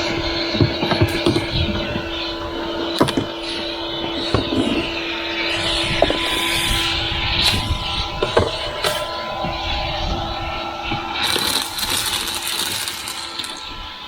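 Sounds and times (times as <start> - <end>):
vacuum cleaner running: 0.0 - 14.0
nozzle knocking hard surfaces: 0.1 - 9.6.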